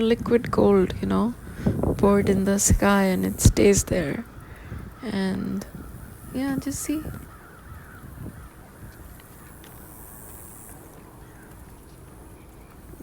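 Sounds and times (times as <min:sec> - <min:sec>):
wind rumbling on microphone: 0:00.0 - 0:13.0
faint bird calls: 0:04.2 - 0:13.0.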